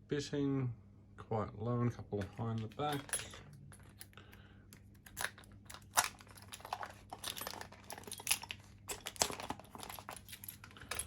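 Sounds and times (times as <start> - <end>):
padlock and keys rattling: 2.5 - 11.0.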